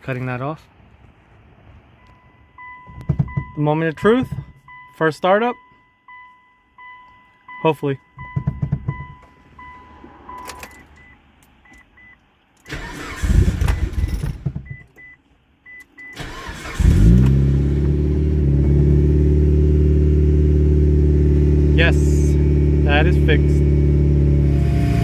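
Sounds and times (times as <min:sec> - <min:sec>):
car engine idling: 0:00.8 - 0:25.0
dashboard chime beeping: 0:02.0 - 0:12.2
starter cranking engine: 0:12.7 - 0:14.5, 0:16.2 - 0:17.5.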